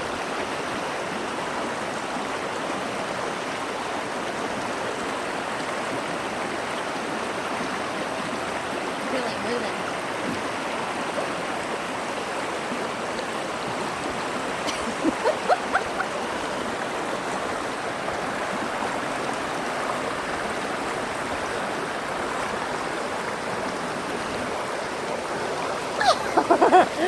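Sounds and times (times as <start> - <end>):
creek water rushing over rocks: 0.0 - 27.0
water splashes: 7.6 - 27.0.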